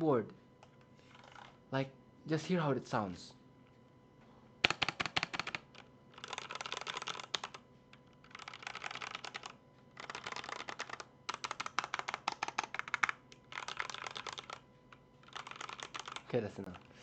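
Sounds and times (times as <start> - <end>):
mechanical keyboard typing: 4.6 - 7.6, 8.2 - 14.6, 15.2 - 16.8.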